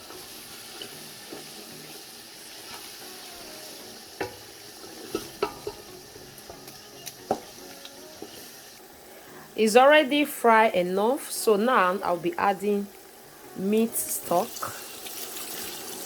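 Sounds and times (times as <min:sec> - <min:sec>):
food sizzling in oil: 0:00.0 - 0:16.0
spoon knocking against pot: 0:04.2 - 0:07.6.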